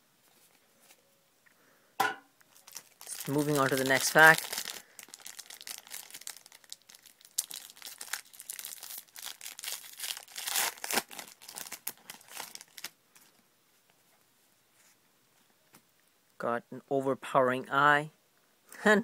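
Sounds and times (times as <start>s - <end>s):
foil wrapper tearing and crinkling: 2.5s - 13.3s.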